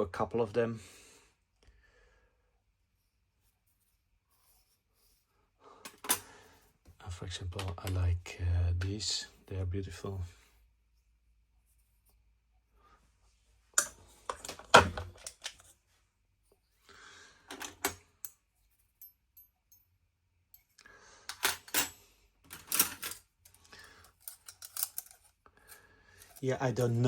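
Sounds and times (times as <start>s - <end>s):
small metal tools clinking: 20.6s - 27.0s.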